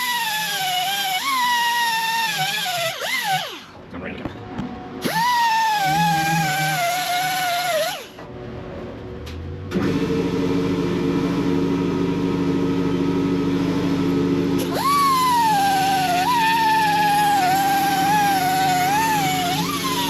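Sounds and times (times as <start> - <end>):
grinder whine: 0.0 - 3.8, 5.0 - 8.3, 9.7 - 20.0
grinding on metal: 14.6 - 20.0.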